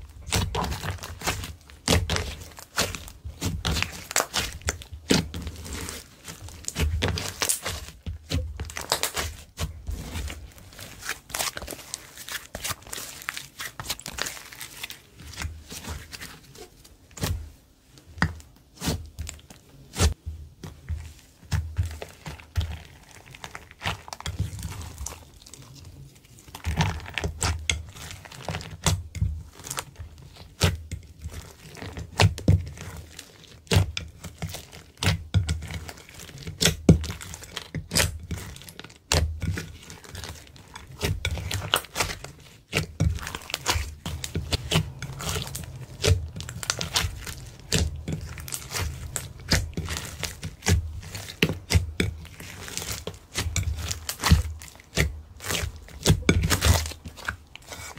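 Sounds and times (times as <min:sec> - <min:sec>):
sticky slime clicks and crackles: 0:33.6 - 0:57.8.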